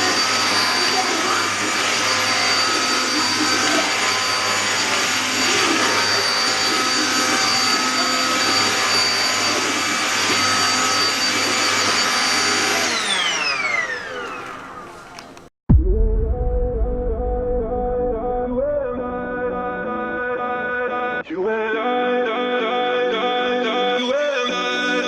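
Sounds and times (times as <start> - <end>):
stick vacuum motor whine: 0.0 - 15.5.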